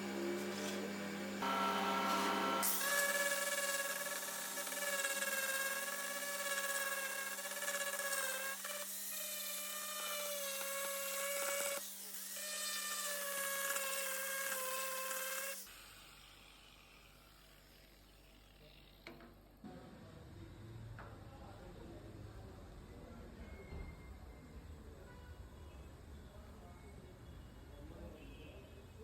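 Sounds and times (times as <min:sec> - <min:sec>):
rotary tool whining: 0:00.2 - 0:19.2.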